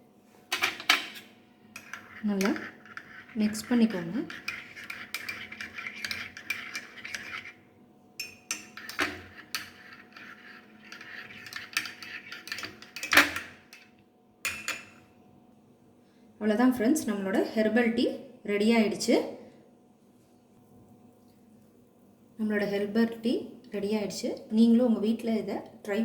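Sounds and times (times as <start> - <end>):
spoon clinking in a cup: 1.8 - 7.4, 8.2 - 13.9, 14.5 - 15.0.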